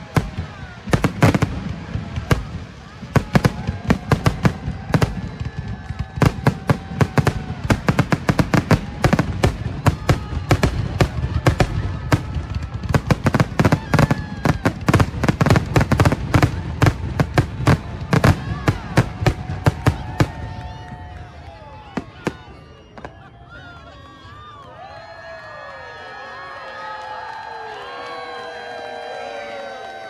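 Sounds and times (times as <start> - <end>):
fireworks bangs and crackles: 0.0 - 23.5.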